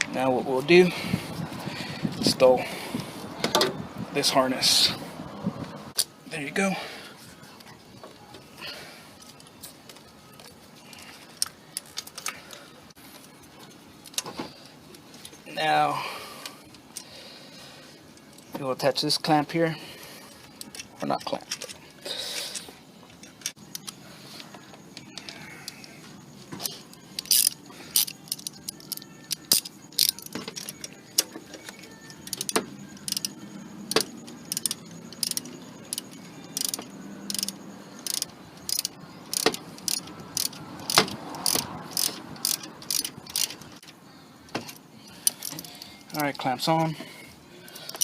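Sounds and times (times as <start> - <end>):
tools clicking and clinking: 11.2 - 12.6, 20.3 - 46.8, 47.7 - 48.0.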